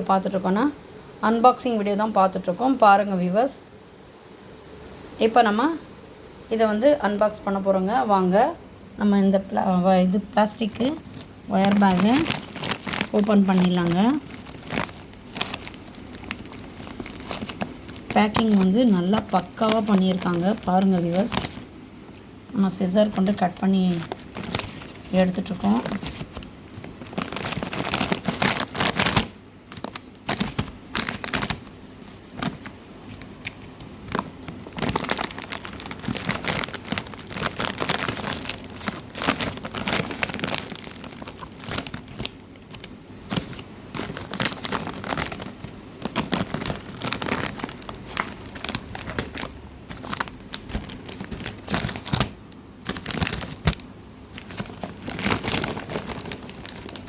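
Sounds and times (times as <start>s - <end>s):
plastic packaging crinkling and tearing: 10.5s - 21.7s, 23.0s - 57.0s.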